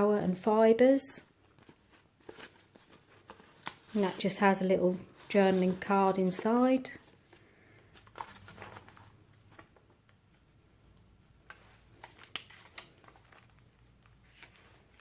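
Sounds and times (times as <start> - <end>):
paper and card rustling: 1.4 - 15.0.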